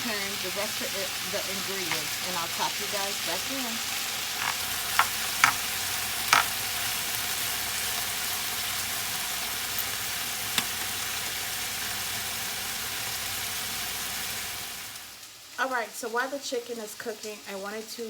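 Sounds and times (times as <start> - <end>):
meat sizzling in a pan: 0.0 - 18.0
sharp knocks: 4.4 - 5.6.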